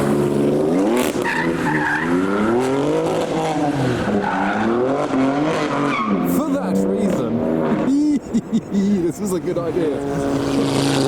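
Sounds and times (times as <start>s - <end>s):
car engines revving: 0.0s - 11.0s
tyres squealing and skidding: 0.2s - 8.1s.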